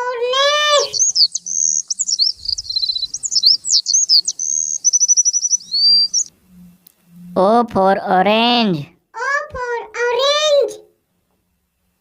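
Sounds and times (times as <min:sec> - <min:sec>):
songbird singing: 0:00.0 - 0:07.5.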